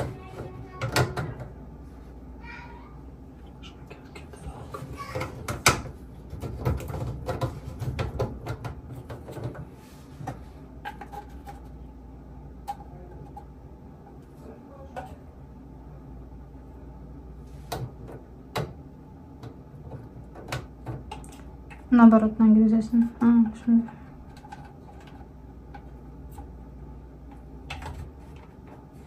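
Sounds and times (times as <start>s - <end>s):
plumbing parts clicking and knocking: 0.0s - 1.6s, 4.0s - 11.7s, 19.4s - 21.9s, 23.1s - 26.6s, 27.3s - 28.9s
low steady hum: 0.0s - 29.0s.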